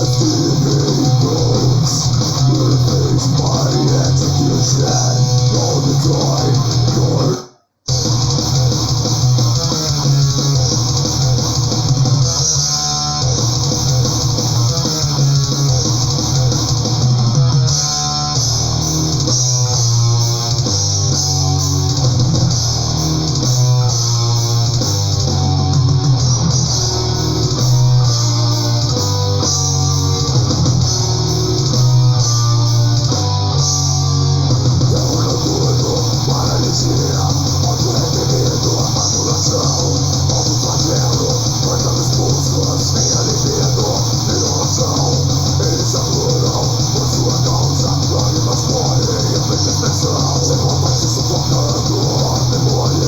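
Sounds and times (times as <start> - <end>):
bass guitar: 0.0 - 53.0
distorted electric guitar riffs: 0.0 - 53.0.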